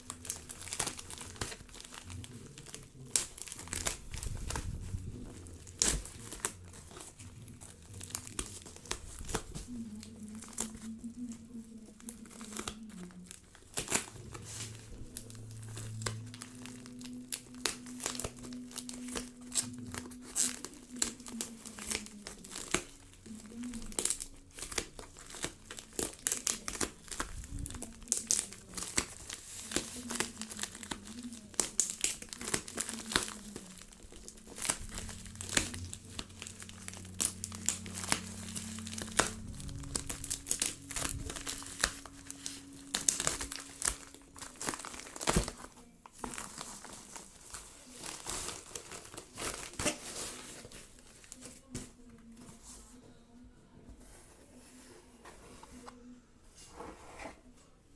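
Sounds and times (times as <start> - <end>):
packaging crinkling and tearing: 0.0 - 52.5.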